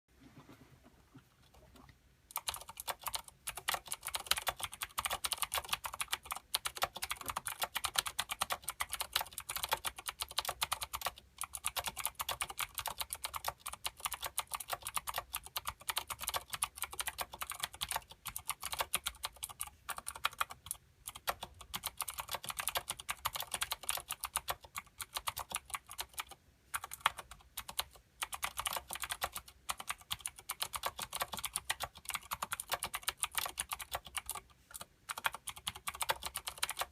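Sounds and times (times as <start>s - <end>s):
mechanical keyboard typing: 2.3s - 36.9s.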